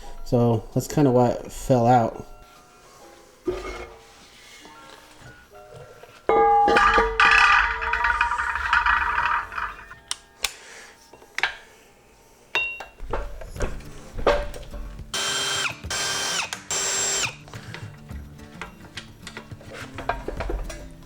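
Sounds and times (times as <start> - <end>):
power tool motor spinning: 15.2 - 17.4.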